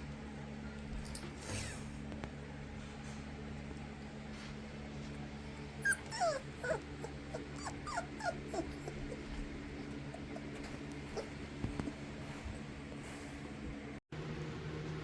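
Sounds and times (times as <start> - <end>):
steady low hum: 0.0 - 15.0
puppy whimpering: 5.8 - 12.0.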